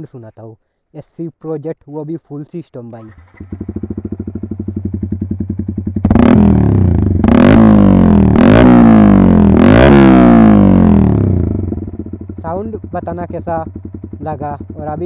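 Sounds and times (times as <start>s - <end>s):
motorcycle engine idling and revving: 3.0s - 15.0s.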